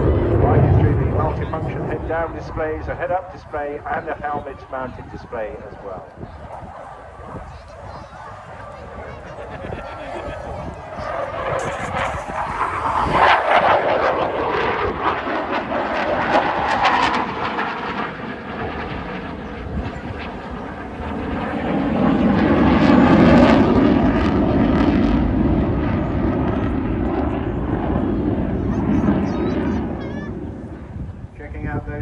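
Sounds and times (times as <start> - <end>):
fighter jet engines roaring: 8.4 - 29.2.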